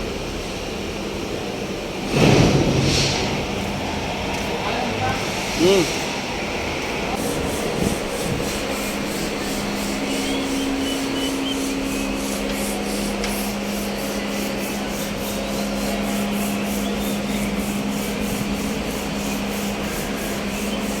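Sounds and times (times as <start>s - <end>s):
higher hum: 5.4s - 21.0s
tractor engine running: 6.4s - 21.0s.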